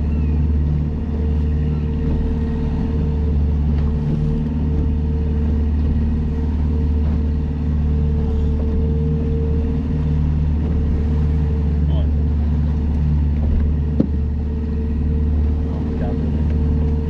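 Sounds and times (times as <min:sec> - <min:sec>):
boat motor droning: 0:00.0 - 0:17.0.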